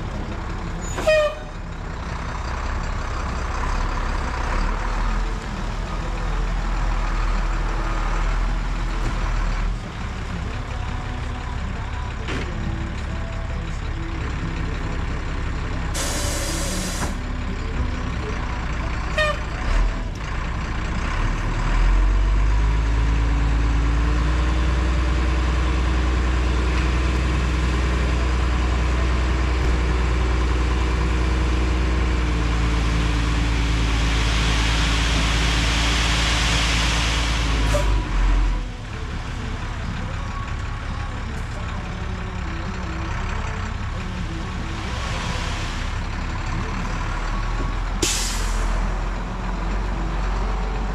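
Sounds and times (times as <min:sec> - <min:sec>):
diesel truck engine running: 0:00.0 - 0:50.9
air hiss: 0:16.0 - 0:17.2.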